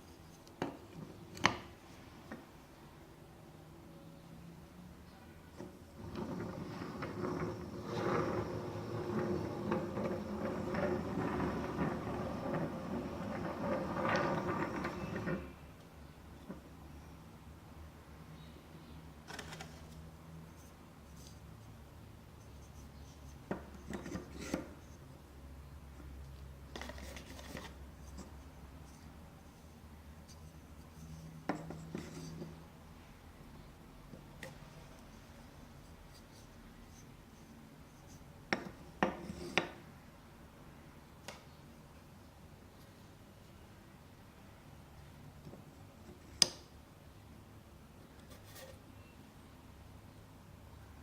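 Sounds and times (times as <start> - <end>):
light scraping: 5.5 - 15.6, 30.3 - 32.6, 48.2 - 49.2.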